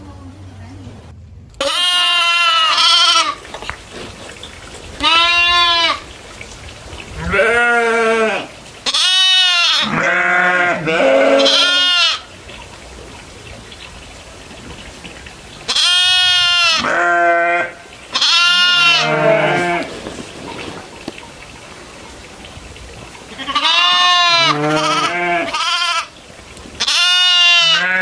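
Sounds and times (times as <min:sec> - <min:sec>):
goats or sheep bleating: 0:01.6 - 0:03.4, 0:05.0 - 0:06.0, 0:07.2 - 0:12.3, 0:15.7 - 0:20.1, 0:23.3 - 0:26.2, 0:26.8 - 0:28.0.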